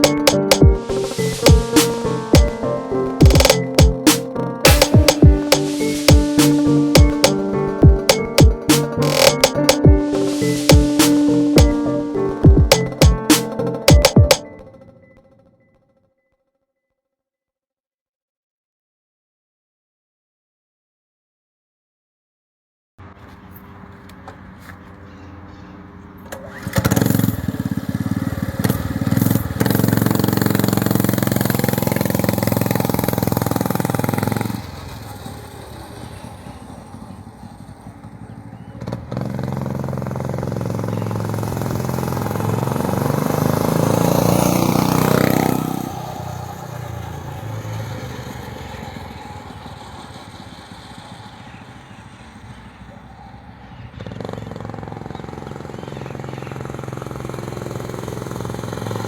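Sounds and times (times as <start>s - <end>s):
small diesel engine running: 23.0s - 52.9s, 53.9s - 59.0s.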